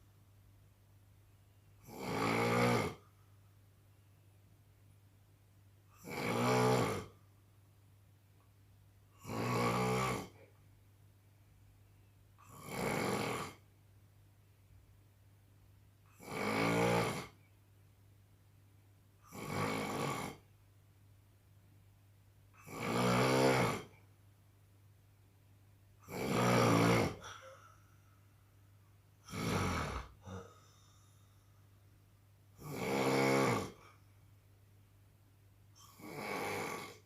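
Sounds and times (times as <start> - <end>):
man snoring: 1.8 - 3.1, 6.0 - 7.2, 9.2 - 10.4, 12.4 - 13.6, 16.1 - 17.4, 19.3 - 20.4, 22.6 - 24.0, 26.0 - 27.7, 29.2 - 31.1, 32.6 - 33.9, 35.8 - 37.0.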